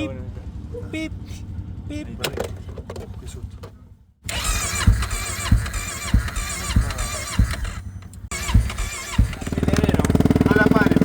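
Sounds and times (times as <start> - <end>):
electric starter whine: 4.2 - 10.1
motorcycle engine cranking: 4.2 - 11.0.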